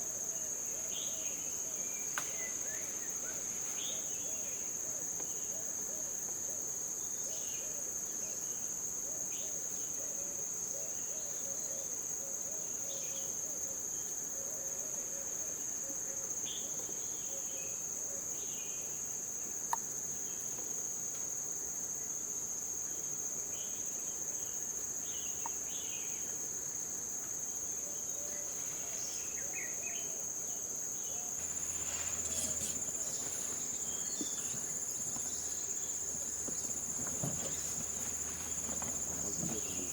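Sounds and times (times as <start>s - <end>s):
high-pitched insect drone: 31.4s - 39.9s
second high insect tone: 31.4s - 39.9s.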